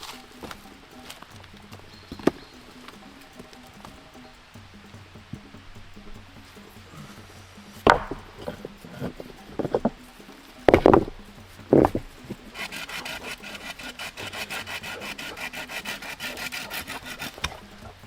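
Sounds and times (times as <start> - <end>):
hand saw cutting wood: 6.7 - 18.0
knocks on wood: 7.8 - 10.0.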